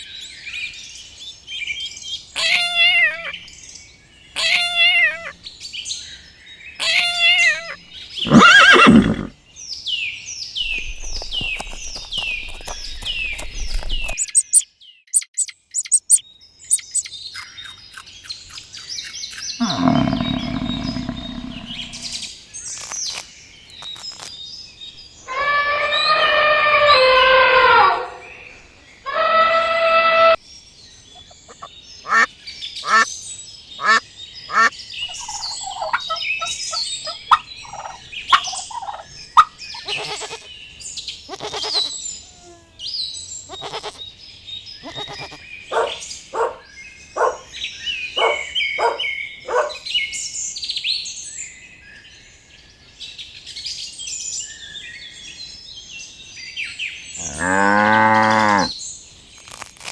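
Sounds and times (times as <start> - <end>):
small birds twittering: 0.0 - 26.2, 28.3 - 59.9
poultry calling: 6.8 - 9.3, 10.6 - 14.3, 17.6 - 22.9, 25.3 - 30.4, 31.2 - 33.1, 33.8 - 40.5, 41.3 - 42.7, 43.5 - 44.0, 44.8 - 46.6, 48.2 - 49.8, 57.2 - 58.7.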